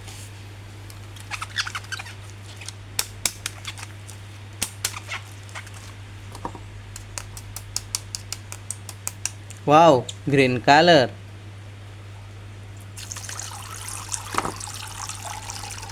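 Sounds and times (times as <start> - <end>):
steady low hum: 0.0 - 15.9
plastic packaging clicks and crinkles: 0.9 - 6.0.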